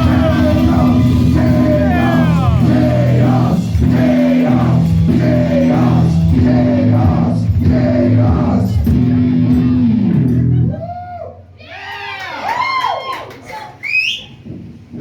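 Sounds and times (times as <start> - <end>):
loud rock music with singing: 0.0 - 10.8.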